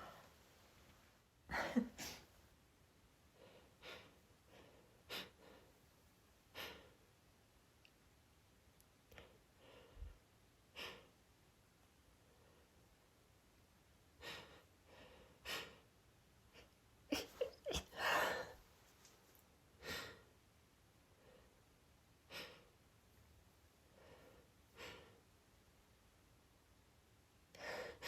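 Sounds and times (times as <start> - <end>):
woman gasping: 17.8 - 18.6.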